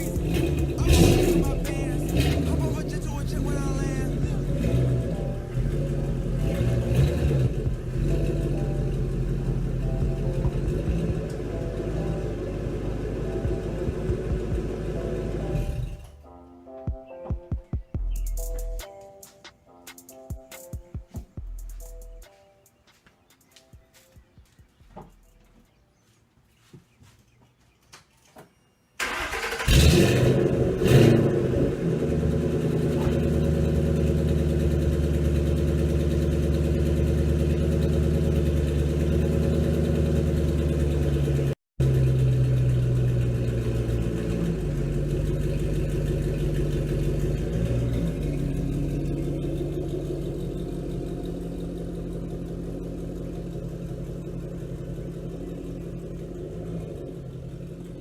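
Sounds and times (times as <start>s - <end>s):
loud car engine revving and idling: 0.0s - 16.1s, 29.1s - 58.0s.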